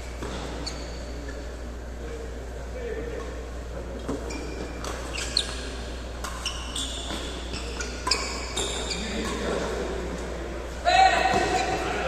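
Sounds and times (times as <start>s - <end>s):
shoes squeaking on court floor: 0.0s - 1.6s, 4.0s - 12.0s.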